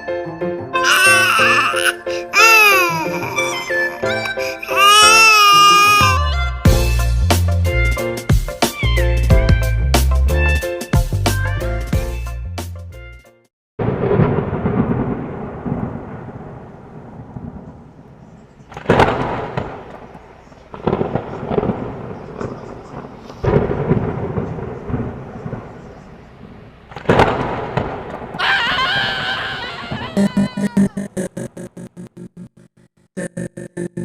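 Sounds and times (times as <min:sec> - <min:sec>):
thunder crack and rumble: 0:13.8 - 0:28.4.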